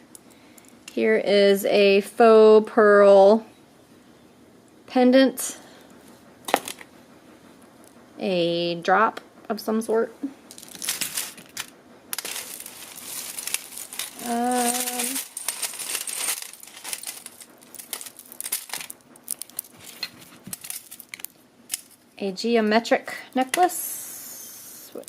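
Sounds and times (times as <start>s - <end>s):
jewelry clinking and jingling: 10.5s - 22.1s
woman humming: 14.2s - 15.2s.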